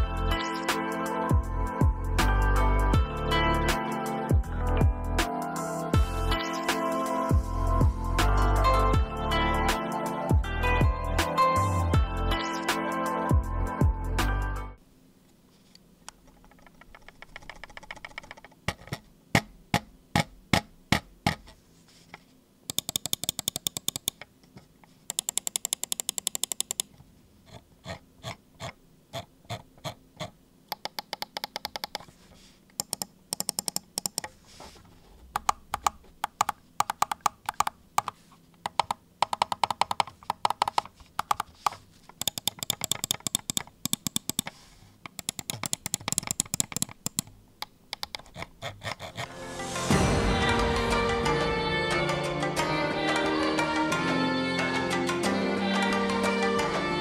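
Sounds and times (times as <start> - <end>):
computer mouse clicking: 16.1 - 21.6, 22.7 - 24.3, 25.0 - 26.9, 27.5 - 32.1, 32.7 - 34.4, 35.3 - 49.3.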